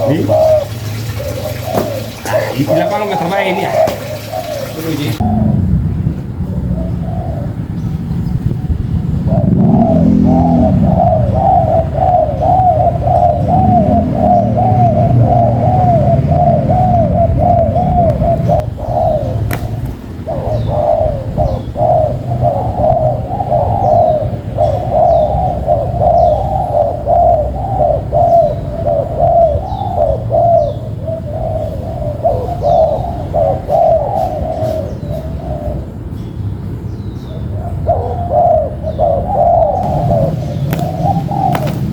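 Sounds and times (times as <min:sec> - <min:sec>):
doves cooing: 0:00.0 - 0:05.6, 0:06.4 - 0:36.2, 0:37.2 - 0:41.9
low hum: 0:05.2 - 0:21.8
small bird chirping: 0:39.8 - 0:41.9.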